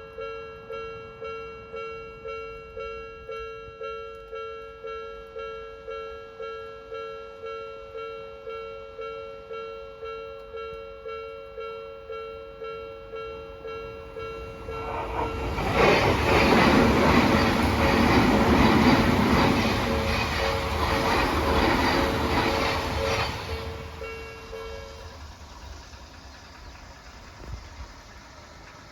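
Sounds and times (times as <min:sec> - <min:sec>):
level crossing warning bell: 0:00.0 - 0:25.3
train passing loudly: 0:12.7 - 0:28.9.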